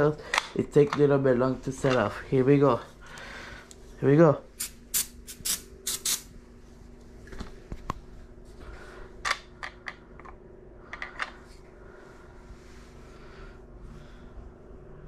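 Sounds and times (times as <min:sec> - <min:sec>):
steady low hum: 0:00.0 - 0:15.0
aerosol spray hissing puffs: 0:04.6 - 0:06.3.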